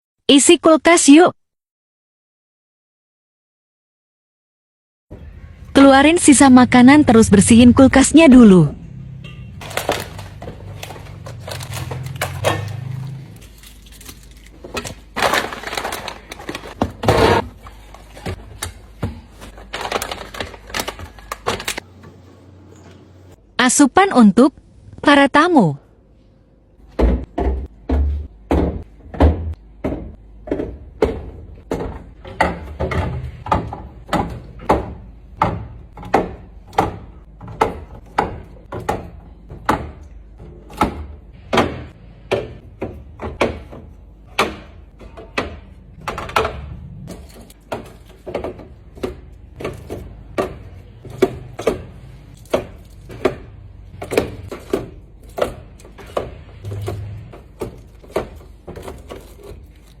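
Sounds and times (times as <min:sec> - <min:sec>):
containers knocking on fridge shelves: 0:26.9 - 0:59.8.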